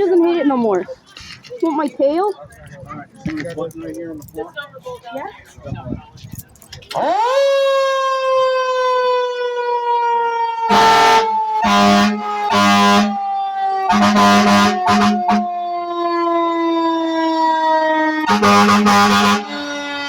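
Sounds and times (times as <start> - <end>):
fire truck siren wailing: 6.9 - 20.0
air horn honking: 10.7 - 15.6, 18.2 - 20.0.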